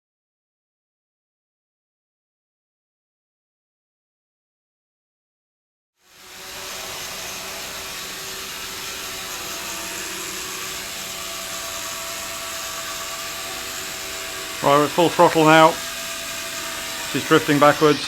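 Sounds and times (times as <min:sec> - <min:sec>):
quadcopter propellers whining: 0:06.0 - 0:18.0.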